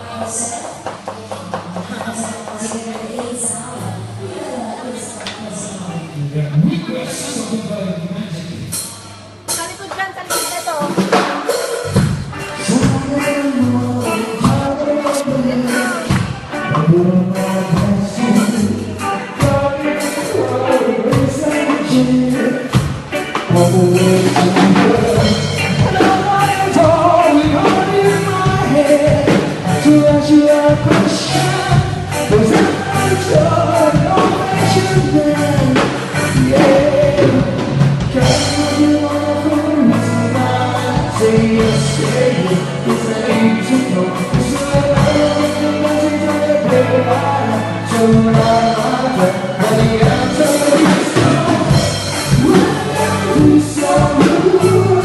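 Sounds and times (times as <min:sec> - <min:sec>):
band music: 0:00.0 - 0:55.0
bass: 0:00.0 - 0:55.0
person singing: 0:00.0 - 0:55.0
steady drum beat: 0:08.6 - 0:55.0.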